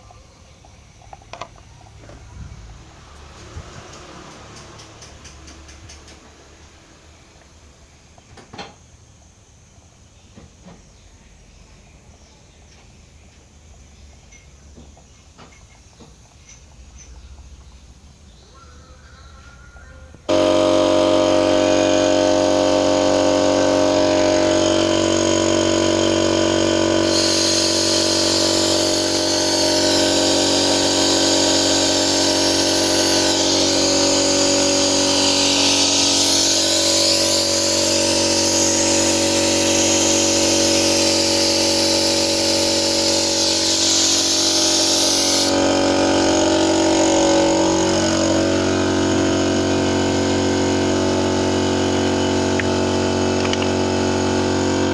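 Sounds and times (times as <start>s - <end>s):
high hiss: 20.3s - 54.9s
machine running: 20.3s - 54.9s.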